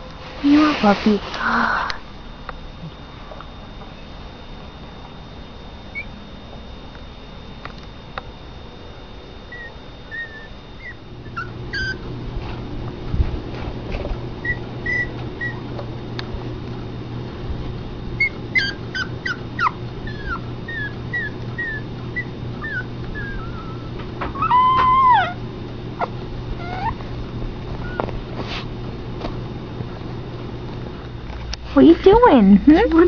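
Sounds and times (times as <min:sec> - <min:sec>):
low steady hum: 0:00.0 - 0:33.0
puppies whimpering: 0:09.5 - 0:12.1, 0:14.4 - 0:15.7, 0:18.2 - 0:28.2.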